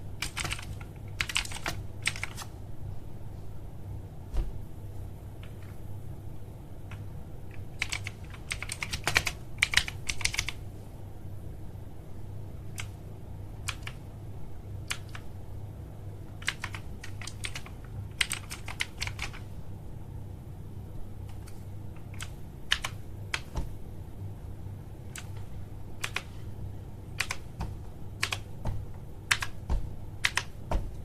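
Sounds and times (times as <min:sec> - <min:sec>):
mechanical keyboard keys clicking: 0:00.2 - 0:02.5, 0:06.9 - 0:10.6, 0:13.6 - 0:14.0, 0:14.9 - 0:15.3, 0:16.4 - 0:19.4, 0:21.4 - 0:23.6, 0:26.0 - 0:26.3, 0:27.2 - 0:27.6, 0:28.2 - 0:28.5, 0:29.3 - 0:30.6.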